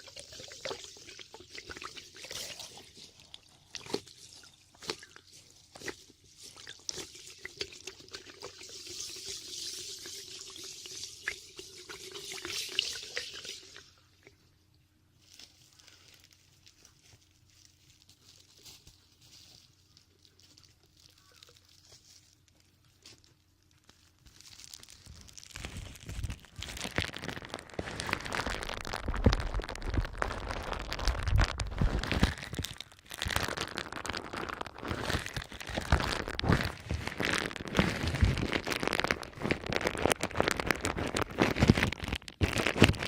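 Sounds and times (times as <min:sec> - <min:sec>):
crackly rustling on microphone: 0:15.2 - 0:43.0.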